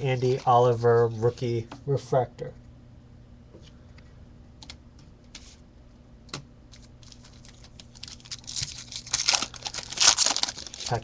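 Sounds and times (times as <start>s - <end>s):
faint steady hum: 0.0s - 11.0s
foil wrapper crinkling: 6.8s - 11.0s.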